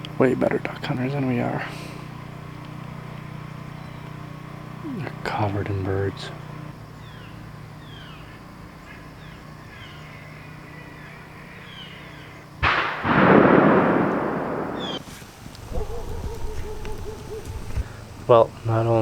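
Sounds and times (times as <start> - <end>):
shotgun blast: 12.6 - 15.1.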